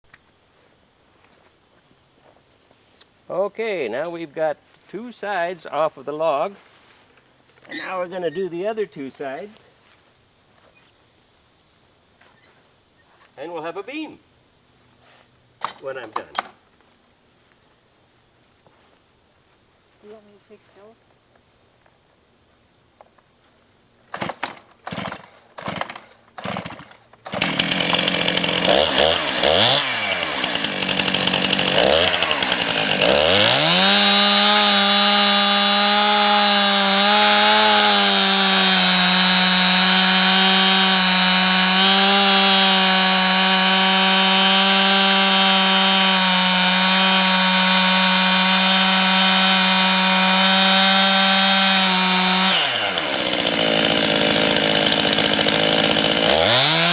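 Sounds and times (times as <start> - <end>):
chainsaw revving and cutting log: 24.1 - 56.9.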